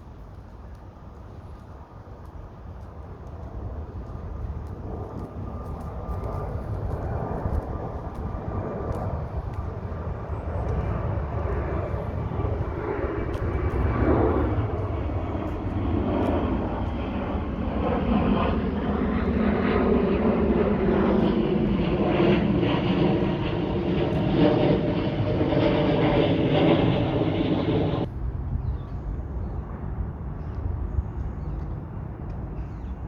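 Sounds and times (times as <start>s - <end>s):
heavy low rumble: 18.8s - 32.5s
loud engine drone: 23.2s - 30.1s.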